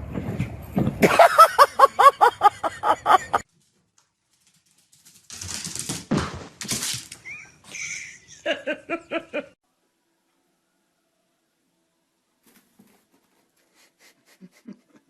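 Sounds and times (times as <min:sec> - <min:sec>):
rustling: 0:03.5 - 0:07.3, 0:12.4 - 0:14.0
thump: 0:06.1 - 0:06.6.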